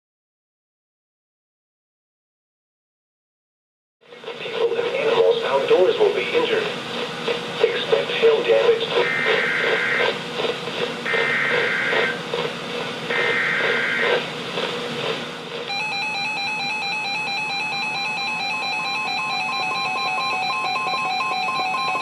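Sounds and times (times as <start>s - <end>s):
rapid beeping: 4.7s - 22.0s
buzzy data bursts: 7.6s - 12.5s, 13.1s - 14.4s.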